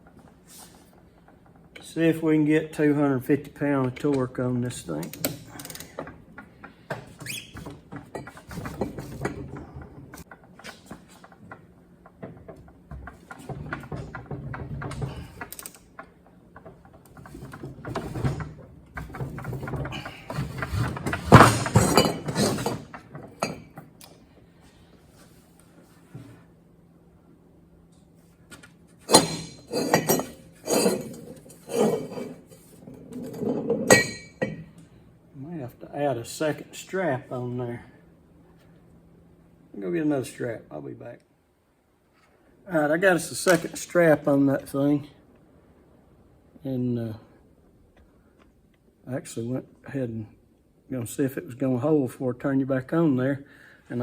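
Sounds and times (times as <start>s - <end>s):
metal clanking: 4.2s - 24.0s, 29.0s - 34.8s
short rising squeak: 7.2s - 7.7s
hand tools clinking and scraping: 16.6s - 23.8s, 29.0s - 34.7s.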